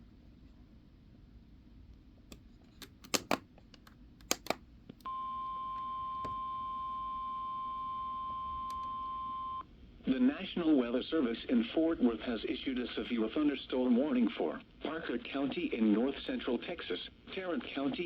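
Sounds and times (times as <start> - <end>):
sharp clicks: 2.3 - 5.1.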